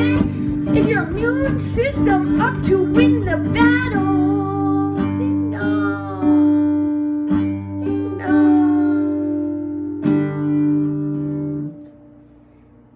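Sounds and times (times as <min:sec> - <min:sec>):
person singing: 0:00.0 - 0:06.8, 0:07.8 - 0:09.7
acoustic guitar strumming: 0:00.0 - 0:12.9.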